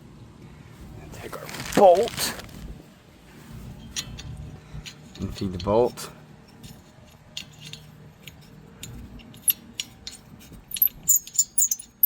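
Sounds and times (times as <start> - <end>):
small metal parts clinking: 3.8 - 12.0.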